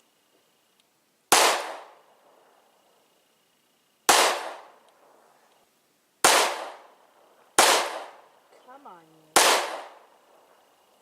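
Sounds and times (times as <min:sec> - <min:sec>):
pistol shots: 0:01.3 - 0:02.0, 0:04.1 - 0:04.8, 0:06.2 - 0:07.0, 0:07.6 - 0:08.3, 0:09.3 - 0:10.4.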